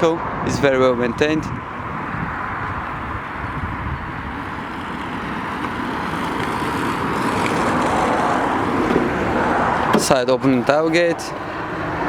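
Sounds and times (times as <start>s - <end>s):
road traffic rush: 0.0s - 12.0s.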